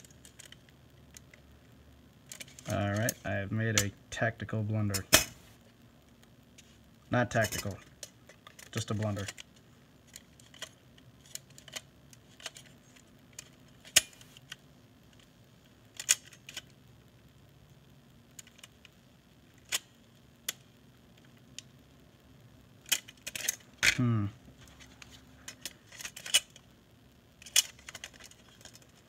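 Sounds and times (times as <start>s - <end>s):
small parts clicking on desk: 0.0s - 1.5s, 15.9s - 16.8s.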